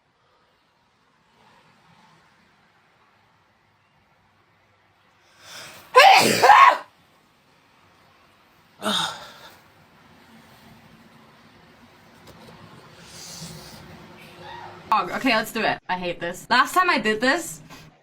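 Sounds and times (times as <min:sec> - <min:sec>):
woman sneezing: 0:05.9 - 0:06.8.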